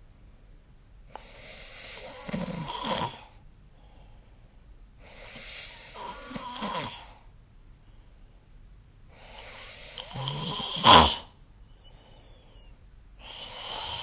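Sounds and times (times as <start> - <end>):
person snoring: 1.4 - 3.3, 5.3 - 7.2, 9.3 - 11.3, 13.2 - 14.0.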